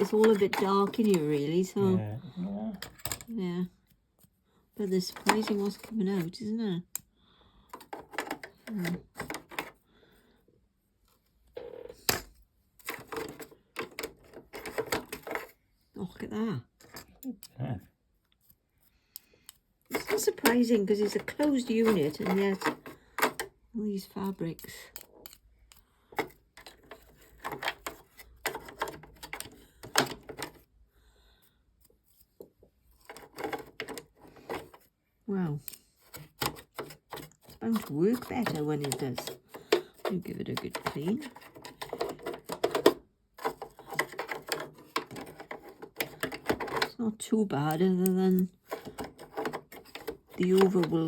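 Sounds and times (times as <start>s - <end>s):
small tools clicking and scraping: 0.0s - 1.8s, 12.1s - 15.6s, 16.7s - 30.7s, 31.4s - 51.0s.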